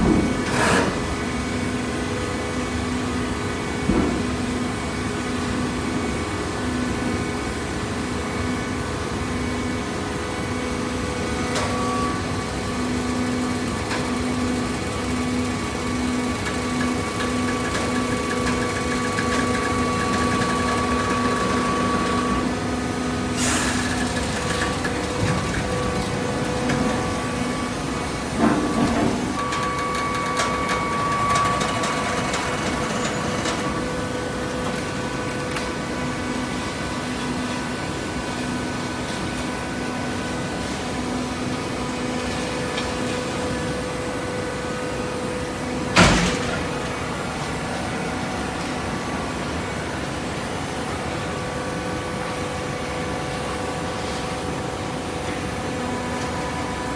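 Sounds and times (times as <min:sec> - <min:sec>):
loud metal clank: 0:46.0 - 0:47.1.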